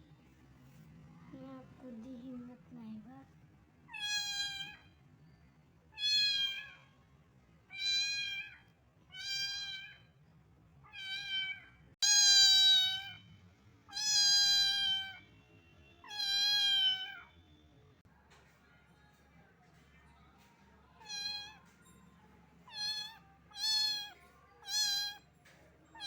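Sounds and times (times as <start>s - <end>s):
kitten meowing: 3.9s - 4.9s, 5.9s - 6.8s, 7.7s - 10.1s, 10.9s - 13.2s, 13.9s - 15.2s, 16.0s - 17.3s, 22.7s - 25.2s.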